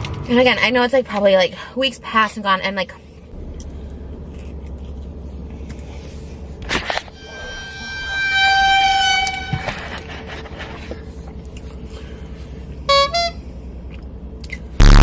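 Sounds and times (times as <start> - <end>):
loud steady horn tone: 7.1 - 10.7, 12.8 - 13.5, 14.8 - 15.0
short horn toots: 7.2 - 10.4, 12.9 - 13.4.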